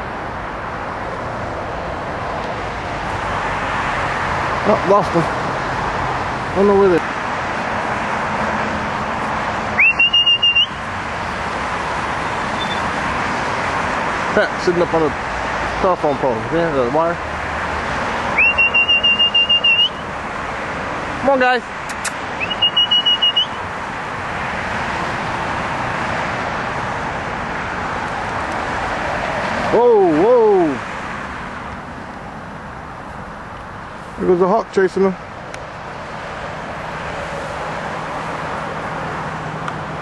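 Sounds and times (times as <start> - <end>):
steady rushing outdoor noise: 0.0 - 40.0
person whistling sharp note: 9.8 - 10.8, 18.4 - 20.0, 22.4 - 23.6.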